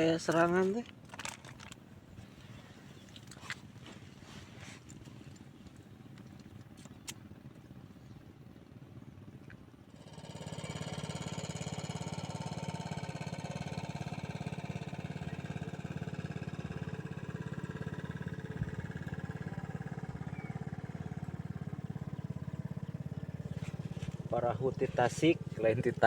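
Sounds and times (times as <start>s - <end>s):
boat engine puttering: 0.0s - 7.8s, 9.8s - 26.0s.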